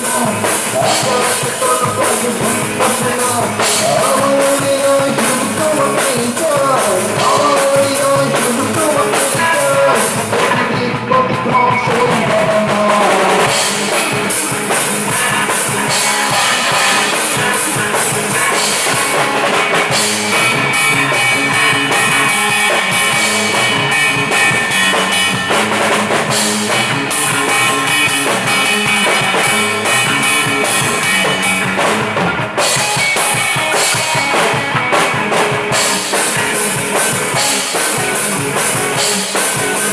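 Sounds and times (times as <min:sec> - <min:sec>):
drum kit with rimshots: 0:00.0 - 0:39.9
guitar bending melody: 0:00.0 - 0:39.9
rock band playing: 0:00.0 - 0:39.9.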